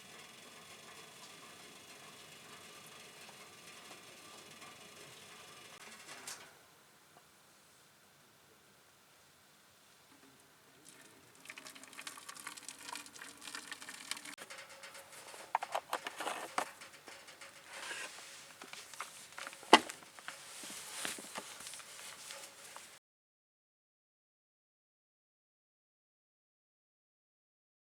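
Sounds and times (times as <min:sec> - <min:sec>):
rustling and crinkling: 0:09.9 - 0:23.0.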